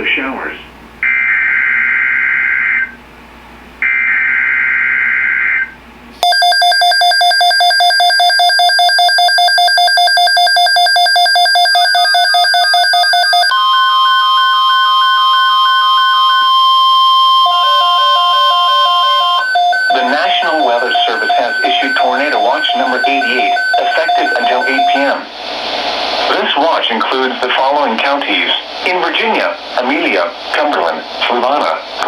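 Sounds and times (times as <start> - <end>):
rapid electronic beeping: 6.2 - 25.3
data bursts: 9.7 - 25.3
steady alert tone: 12.1 - 25.3
two-note warbling beep: 13.5 - 25.1.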